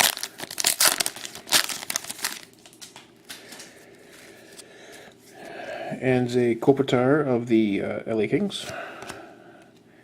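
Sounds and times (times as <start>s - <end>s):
wrapper crinkling and rustling: 0.0s - 3.6s.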